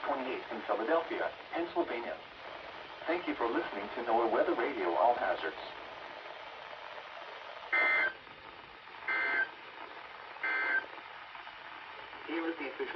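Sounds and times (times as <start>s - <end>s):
faint radio hiss: 0.0s - 12.9s
warbling data tones: 7.7s - 8.2s, 9.0s - 9.7s, 10.4s - 11.0s.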